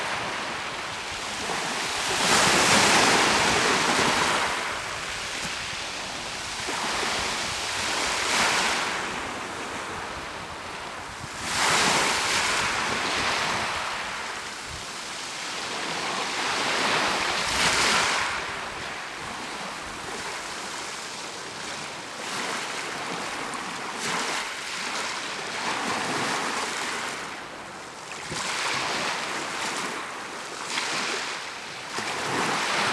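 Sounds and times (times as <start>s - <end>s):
wind on microphone: 0.0s - 14.9s
waves breaking on shore: 0.0s - 20.9s, 28.1s - 32.9s.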